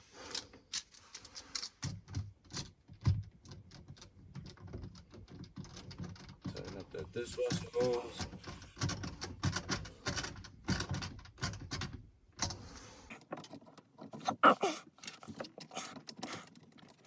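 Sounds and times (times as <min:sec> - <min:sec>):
hand tools clicking and rattling: 0:13.1 - 0:17.0.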